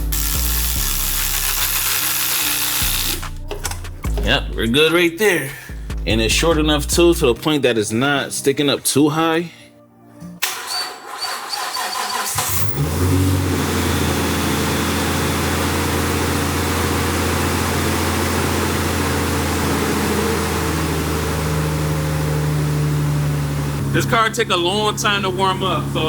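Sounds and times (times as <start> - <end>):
car engine starting and idling: 10.4 - 26.0.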